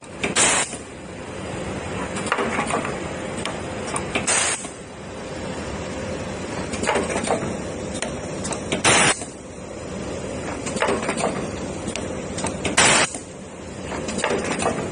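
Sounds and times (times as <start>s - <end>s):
loud short hiss: 0.4s - 0.8s, 4.3s - 4.7s, 8.8s - 9.2s.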